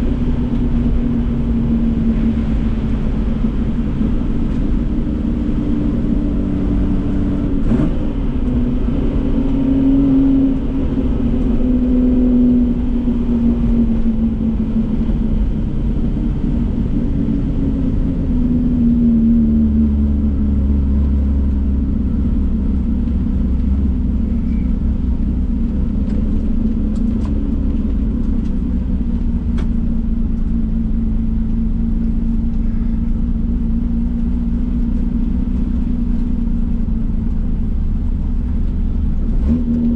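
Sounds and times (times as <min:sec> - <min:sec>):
deep low rumble: 0:00.0 - 0:39.9
racing car engine accelerating: 0:01.6 - 0:12.9.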